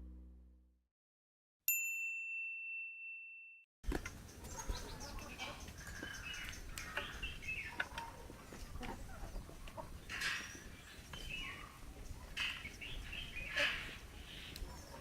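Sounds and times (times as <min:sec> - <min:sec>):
chickens clucking and calling: 0:03.9 - 0:15.0.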